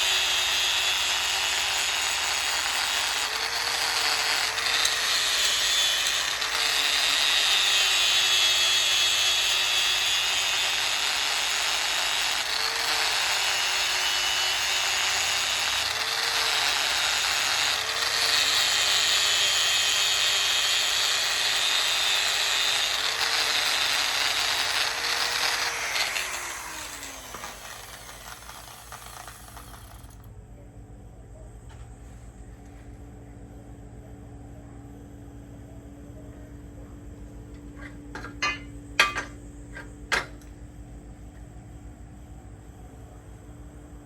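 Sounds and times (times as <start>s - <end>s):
power tool motor whine: 0.0s - 30.3s.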